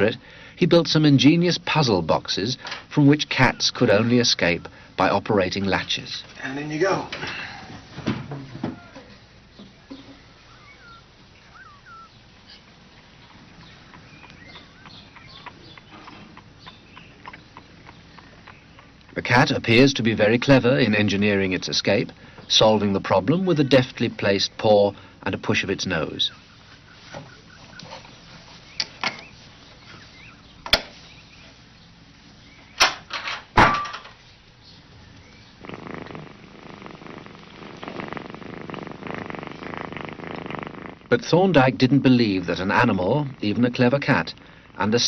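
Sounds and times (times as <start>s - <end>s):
short bird chirps: 10.0s - 12.6s.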